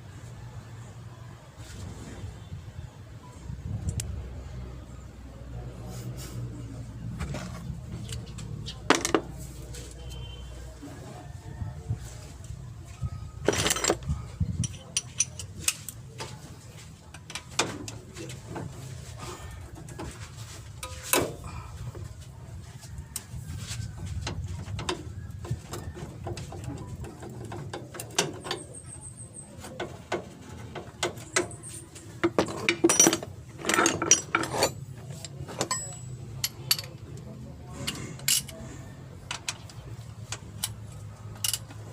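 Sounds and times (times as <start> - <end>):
metal tools clinking: 13.4 - 16.0, 27.4 - 37.2, 37.8 - 38.7, 40.4 - 41.9.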